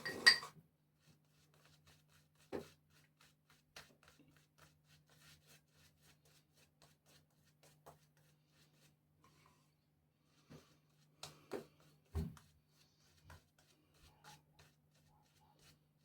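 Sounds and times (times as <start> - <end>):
shaving brush strokes: 10.3 - 16.0.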